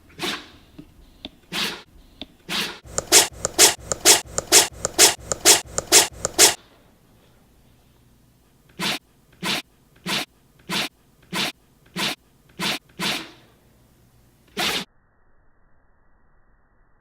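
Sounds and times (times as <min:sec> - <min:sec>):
dog sneezing: 0:00.1 - 0:00.5, 0:01.5 - 0:01.8, 0:08.8 - 0:13.4.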